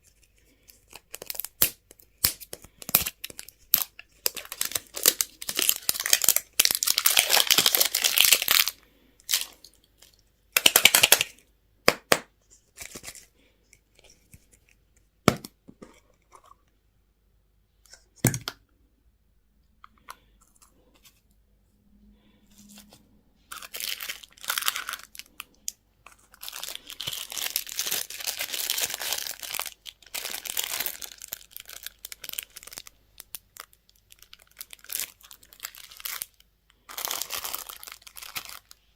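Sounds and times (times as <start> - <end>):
candy wrappers crinkling: 0.0 - 11.4, 23.5 - 38.9.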